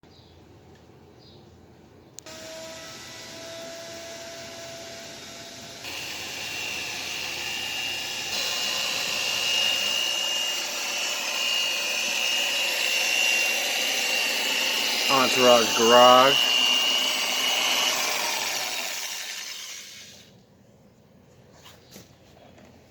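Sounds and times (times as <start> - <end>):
motorised tool running: 2.3 - 20.3.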